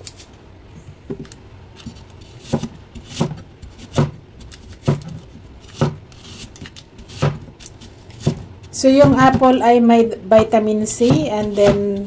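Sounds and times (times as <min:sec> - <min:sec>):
knife chopping on cutting board: 0:02.2 - 0:09.6, 0:10.4 - 0:12.0.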